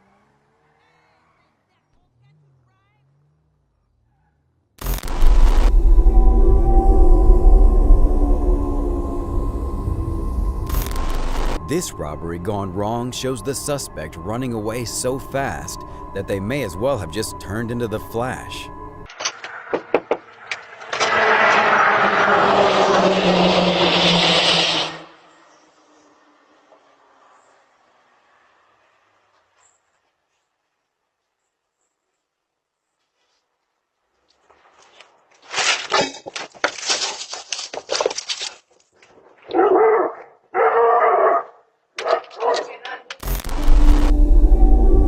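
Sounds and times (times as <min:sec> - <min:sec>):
vehicle engine drone: 0:04.8 - 0:29.6, 0:43.2 - 0:45.0
rushing hiss rising in pitch: 0:05.0 - 0:12.2
dog barking: 0:39.5 - 0:42.7.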